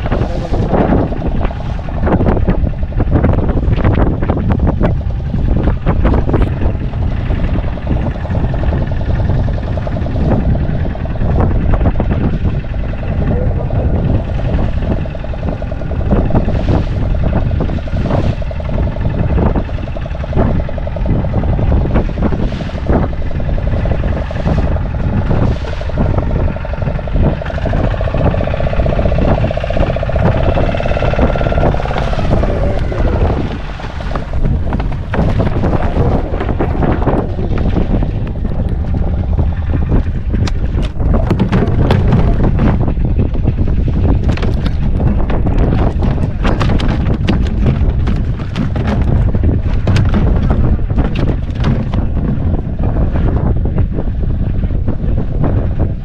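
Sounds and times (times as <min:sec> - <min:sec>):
boat engine running: 0:00.0 - 0:56.0
wind buffeting microphone: 0:00.0 - 0:56.0.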